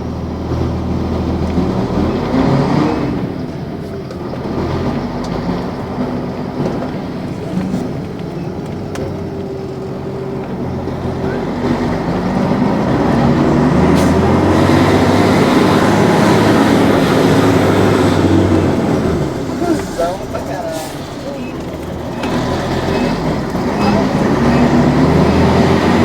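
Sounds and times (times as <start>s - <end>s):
bus diesel engine running: 0.0s - 26.0s.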